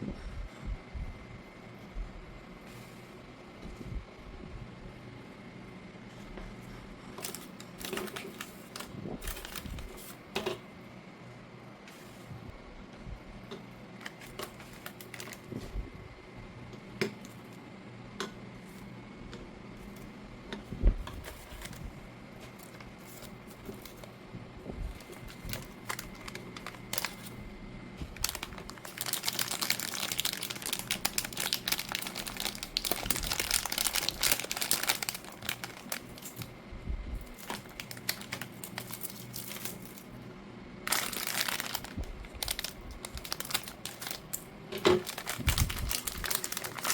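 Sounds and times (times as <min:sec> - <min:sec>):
plastic packaging crinkling: 0:07.2 - 0:10.2, 0:14.0 - 0:15.6, 0:21.1 - 0:21.9, 0:22.5 - 0:24.1, 0:24.9 - 0:27.4, 0:28.0 - 0:36.5, 0:37.2 - 0:40.2, 0:40.8 - 0:46.9.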